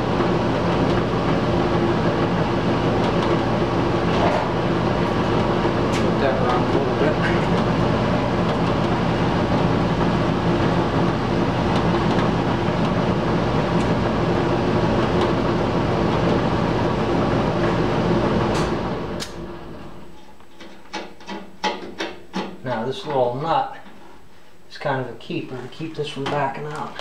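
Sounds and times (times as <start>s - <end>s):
blower humming and spinning down: 0.0s - 20.3s.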